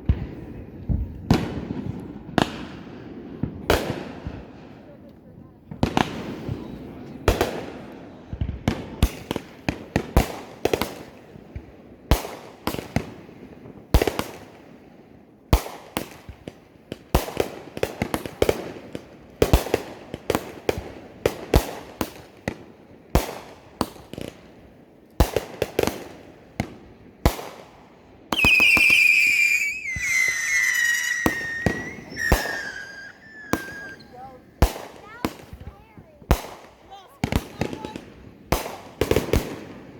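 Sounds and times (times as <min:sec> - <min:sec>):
fireworks bangs: 0:25.2 - 0:39.9
shrill falling whistle: 0:28.4 - 0:34.1.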